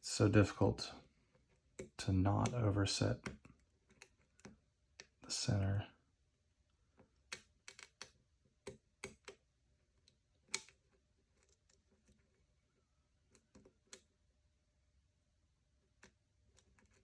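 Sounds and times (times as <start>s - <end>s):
lock pick clicking in lock: 7.3s - 9.4s.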